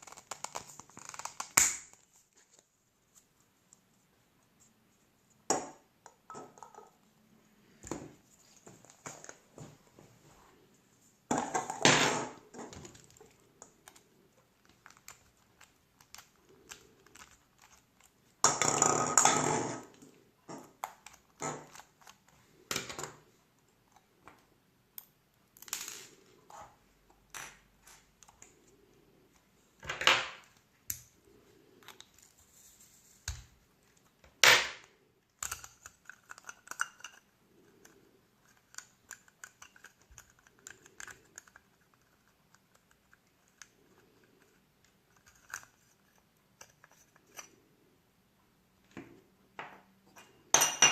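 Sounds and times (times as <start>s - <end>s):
small hard objects clicking and scraping: 11.6s - 23.3s, 34.9s - 47.8s.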